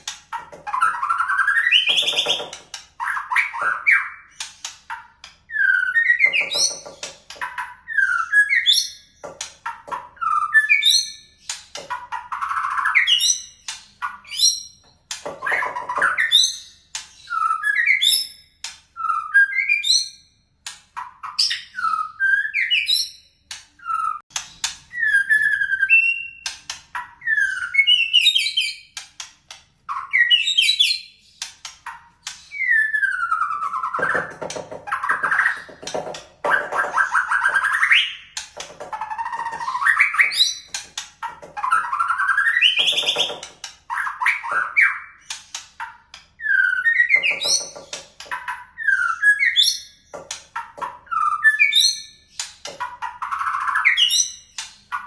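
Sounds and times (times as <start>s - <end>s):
bird chirps: 0.0s - 20.4s, 29.9s - 55.0s.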